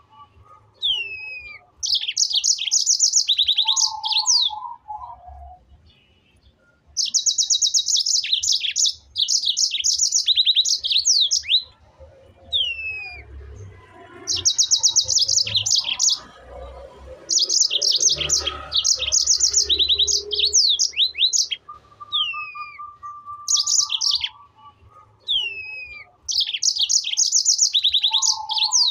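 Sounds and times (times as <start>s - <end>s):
songbird trilling: 0.8s - 5.6s, 7.0s - 11.7s, 14.2s - 16.3s, 17.2s - 28.9s
down-slurred whistles: 12.5s - 13.4s, 17.6s - 28.9s.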